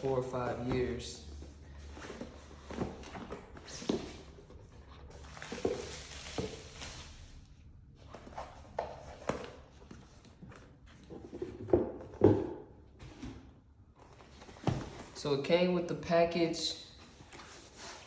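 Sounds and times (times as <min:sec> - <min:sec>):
packaging rustling: 0:05.2 - 0:07.2.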